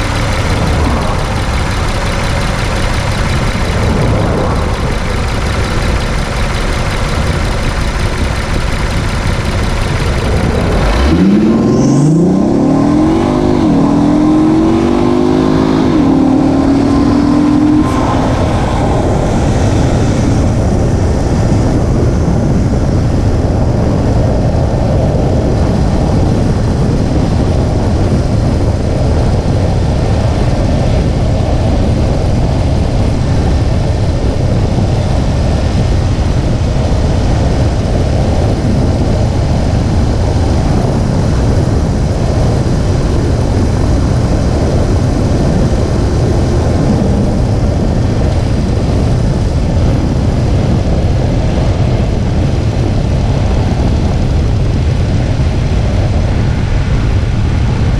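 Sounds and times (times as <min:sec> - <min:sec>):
car engine accelerating: 0:00.0 - 0:21.6
road noise: 0:00.0 - 0:57.9.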